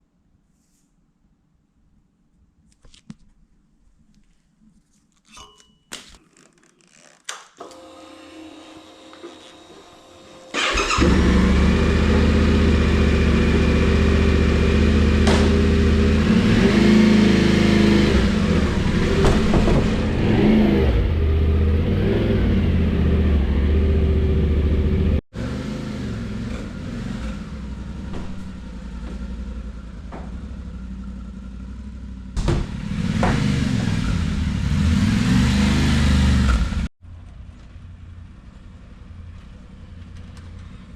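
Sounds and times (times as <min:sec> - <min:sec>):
motorcycle engine running: 0:10.6 - 0:20.3, 0:22.5 - 0:36.9.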